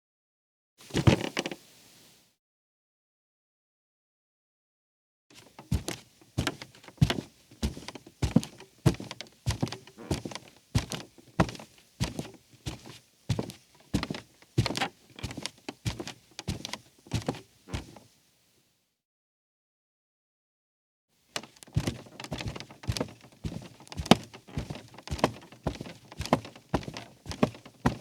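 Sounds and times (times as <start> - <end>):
bare footsteps on rug: 5.4 - 18.0, 21.8 - 28.0.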